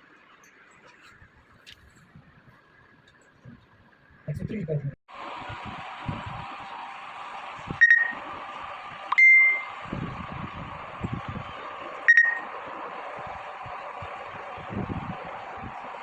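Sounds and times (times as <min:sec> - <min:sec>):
high electronic beeps: 0:07.8 - 0:08.2, 0:09.1 - 0:09.7, 0:12.1 - 0:12.5.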